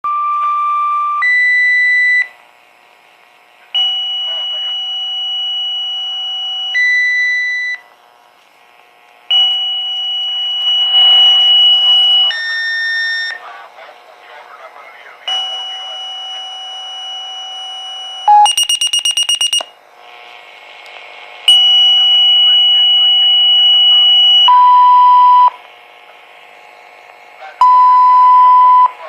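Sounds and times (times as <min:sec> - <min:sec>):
pager two-tone paging tones: 0:18.3 - 0:19.7, 0:24.5 - 0:25.6, 0:27.6 - 0:28.9.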